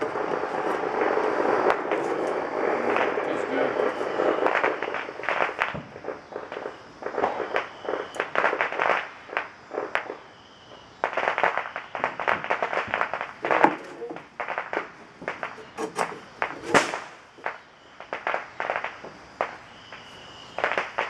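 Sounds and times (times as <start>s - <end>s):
drawknife shaving wood: 15.6s - 16.9s.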